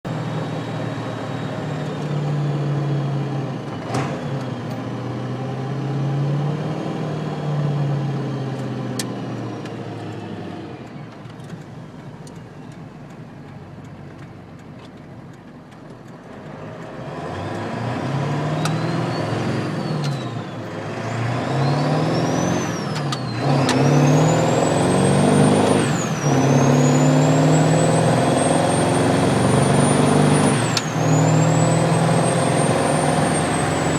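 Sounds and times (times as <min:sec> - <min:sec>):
diesel truck engine accelerating: 0:00.1 - 0:33.9.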